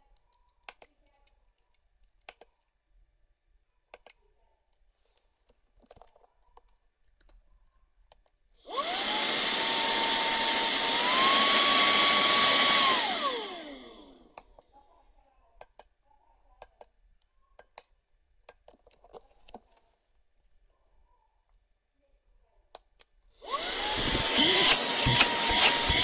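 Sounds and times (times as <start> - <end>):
handheld vacuum motor whining: 8.7 - 14.2, 23.4 - 26.0.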